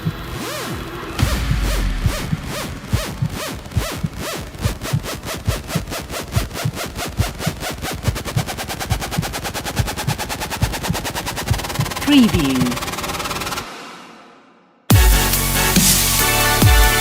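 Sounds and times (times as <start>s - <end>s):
drum roll speeding up: 0.0s - 12.8s.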